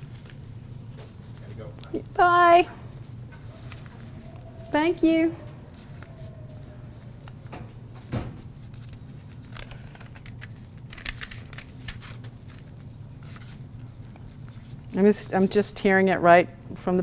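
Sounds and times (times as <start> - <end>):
steady low hum: 0.0 - 17.0
plastic pack crinkling: 8.4 - 13.4.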